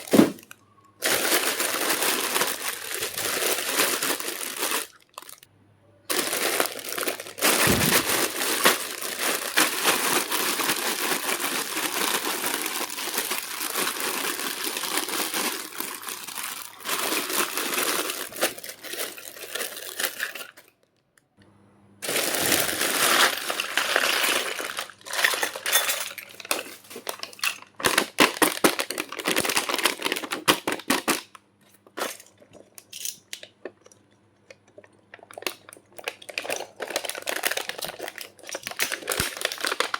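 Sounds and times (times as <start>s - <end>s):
plastic packaging crinkling: 0.0s - 5.5s, 6.1s - 20.9s, 22.0s - 32.7s, 34.6s - 39.9s.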